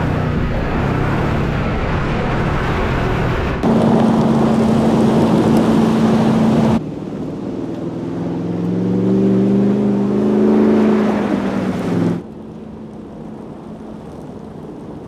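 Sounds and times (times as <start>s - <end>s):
loud rushing noise: 0.0s - 6.9s
engine droning and revving: 0.0s - 15.0s.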